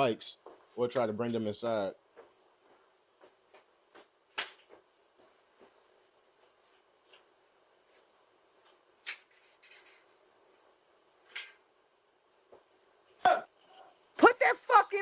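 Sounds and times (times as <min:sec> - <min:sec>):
microphone hiss: 0:00.0 - 0:15.0
faint clicks and knocks: 0:02.0 - 0:11.8.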